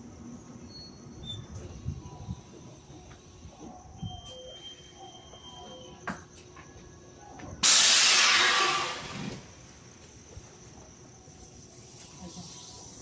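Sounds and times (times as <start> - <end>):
compressed air hissing from train: 7.6 - 9.9.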